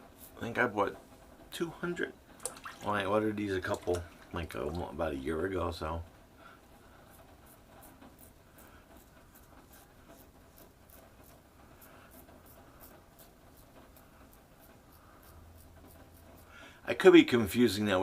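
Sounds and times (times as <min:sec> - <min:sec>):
razor scraping stubble: 0:07.0 - 0:17.8.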